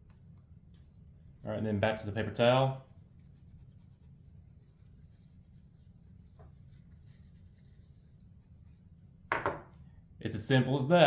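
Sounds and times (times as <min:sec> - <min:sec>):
low steady hum: 0:00.0 - 0:11.0
paper towel rubbing on metal: 0:00.8 - 0:09.2.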